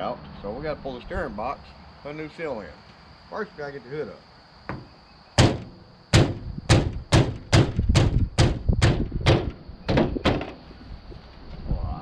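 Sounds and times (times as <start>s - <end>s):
ringing thumps on sheet-metal hood: 4.7s - 10.6s.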